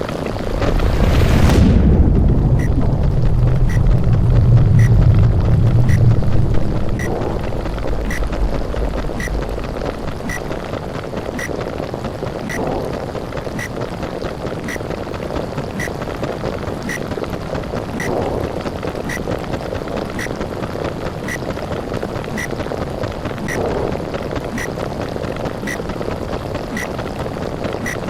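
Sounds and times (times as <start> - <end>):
muffled underwater bubbling: 0.0 - 28.0
deep rumble: 0.4 - 11.4.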